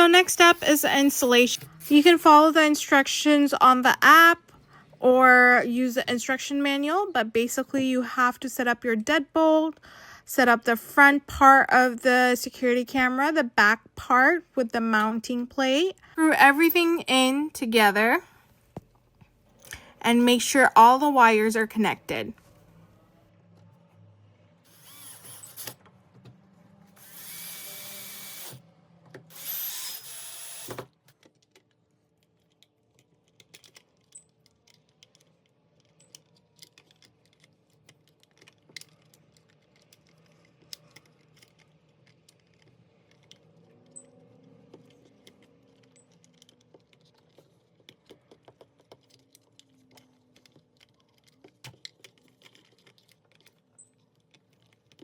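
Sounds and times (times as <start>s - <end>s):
power drill driving screws: 24.7s - 25.8s, 27.0s - 28.6s, 29.3s - 30.9s
faint clicks and taps of parts: 31.0s - 55.0s.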